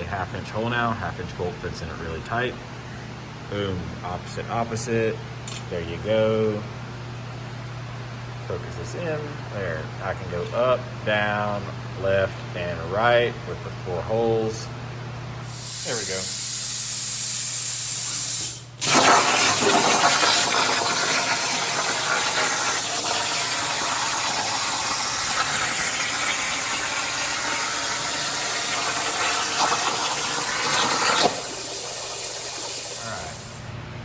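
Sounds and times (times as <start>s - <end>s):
plasma cutter arc hissing: 15.4s - 33.7s.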